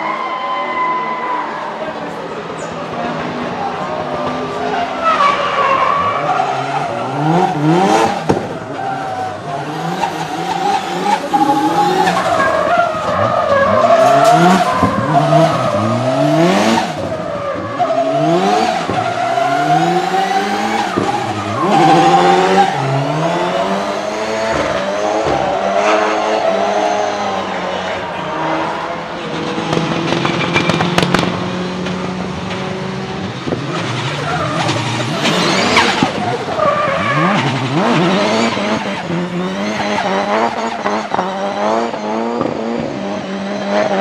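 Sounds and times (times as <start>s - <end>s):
car engine revving hard: 4.0s - 44.0s
tyres squealing: 4.6s - 27.5s, 33.6s - 41.4s.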